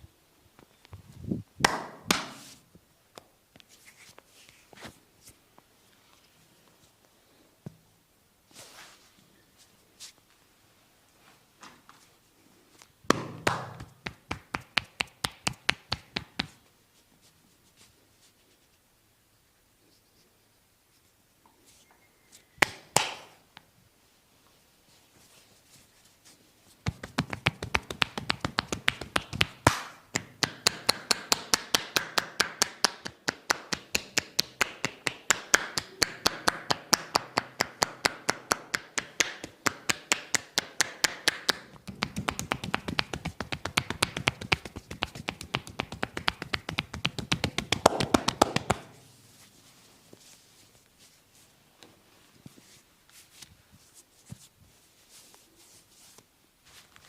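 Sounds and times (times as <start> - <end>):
hands tapping and slapping body: 1.6 - 2.5, 13.1 - 16.6, 22.6 - 23.4, 26.8 - 49.0.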